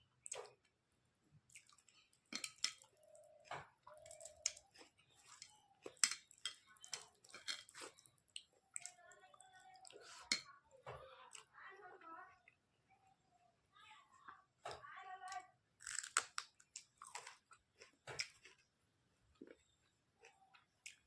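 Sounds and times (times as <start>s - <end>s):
wet chewing and lip smacks: 1.4s - 9.0s.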